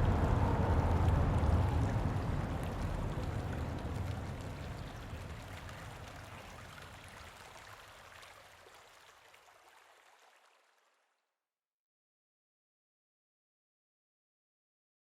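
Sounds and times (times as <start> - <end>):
steady rushing noise: 0.0 - 5.6.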